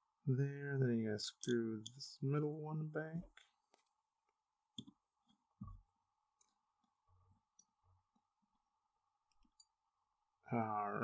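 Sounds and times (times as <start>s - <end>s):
faint clicks of metal knife parts: 1.3s - 2.0s.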